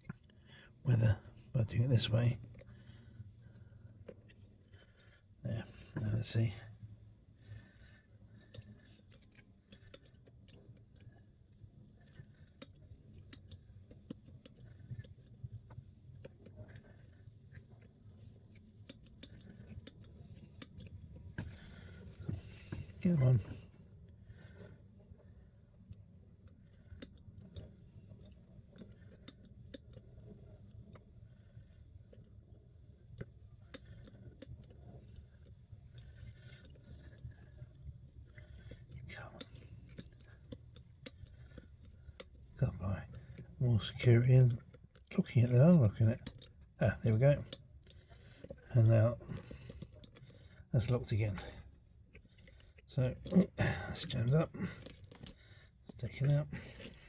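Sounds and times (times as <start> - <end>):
low steady hum: 0.0 - 57.0
lock pick clicking and scraping: 8.6 - 11.0, 18.8 - 23.6, 26.4 - 30.9, 54.0 - 56.3
lock pick clicking in padlock: 54.8 - 55.4.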